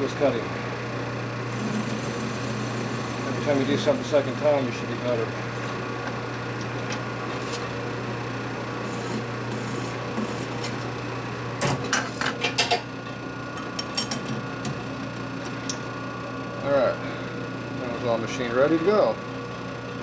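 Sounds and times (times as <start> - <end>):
metal lathe humming: 0.2 - 11.6.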